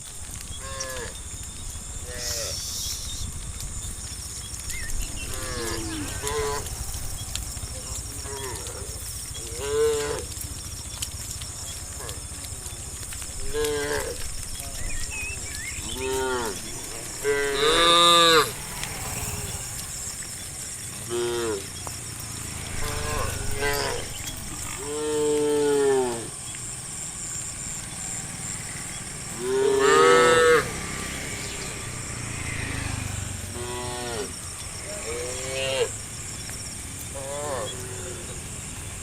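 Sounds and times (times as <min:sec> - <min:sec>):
steady high hiss: 0:01.8 - 0:09.6
cows mooing: 0:05.2 - 0:07.0, 0:07.9 - 0:10.4, 0:13.4 - 0:14.4, 0:15.8 - 0:21.7, 0:22.4 - 0:26.4, 0:29.2 - 0:36.1, 0:37.1 - 0:38.6.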